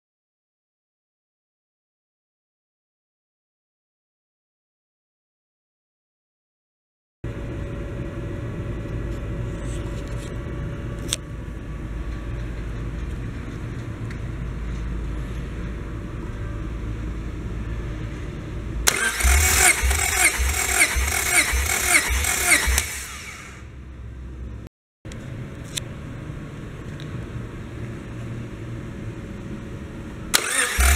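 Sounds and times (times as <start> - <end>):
car engine running: 18.6 - 24.7, 30.4 - 30.9.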